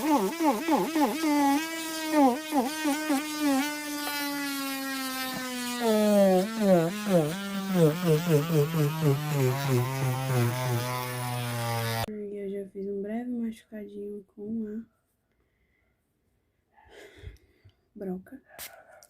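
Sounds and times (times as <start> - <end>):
electric nail drill whirring: 0.0 - 12.1.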